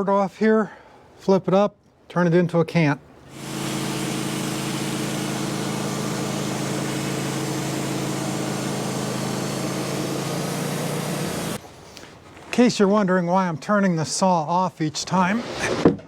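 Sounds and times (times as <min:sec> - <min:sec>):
sawmill engine running: 0:03.2 - 0:11.6.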